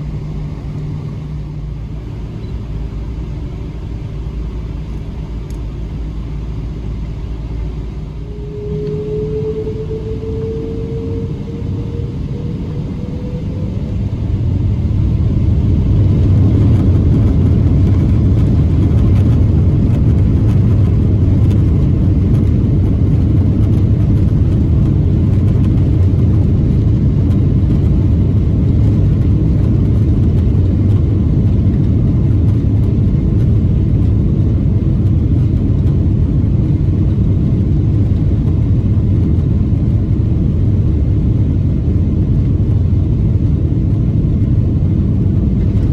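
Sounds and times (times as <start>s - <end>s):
jet engine rumble: 0.0s - 45.9s
jet engines spooling up: 7.0s - 34.3s.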